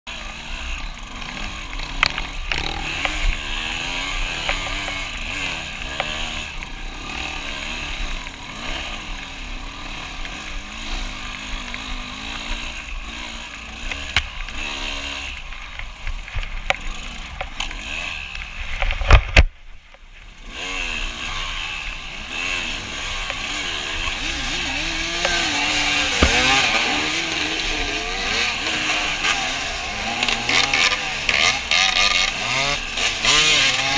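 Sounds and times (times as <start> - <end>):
dirt bike engine revving: 0.1 - 19.5, 20.2 - 33.9
heavy thumps: 25.1 - 27.0.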